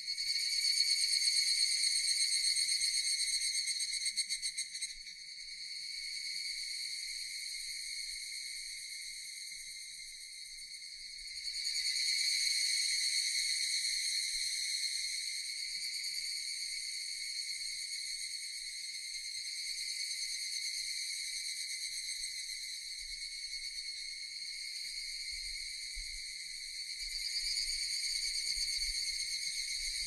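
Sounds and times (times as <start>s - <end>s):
cicadas droning: 0.0s - 30.0s.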